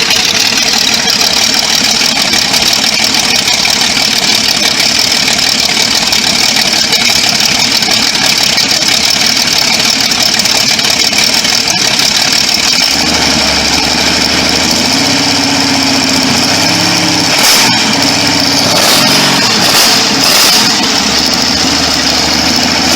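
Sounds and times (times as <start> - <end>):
engine running: 0.0 - 22.9
engine revving: 11.1 - 22.9.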